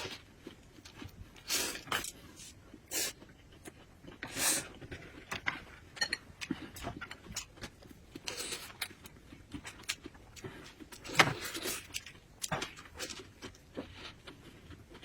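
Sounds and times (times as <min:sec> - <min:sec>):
person chewing and lip-smacking: 0:06.4 - 0:15.0.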